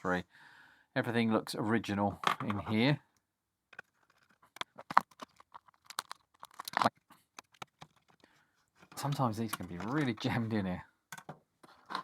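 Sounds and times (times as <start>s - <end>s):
plastic clicks: 2.2s - 2.8s, 3.7s - 10.4s, 11.1s - 12.0s
plastic case scraping: 3.8s - 10.4s, 11.6s - 12.0s.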